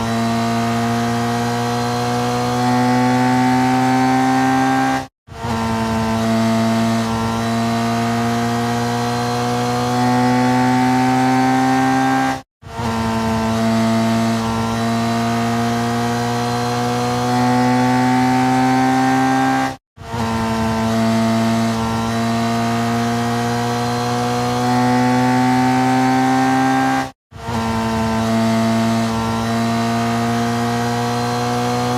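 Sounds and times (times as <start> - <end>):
racing motorcycle engine revving: 0.0 - 31.9.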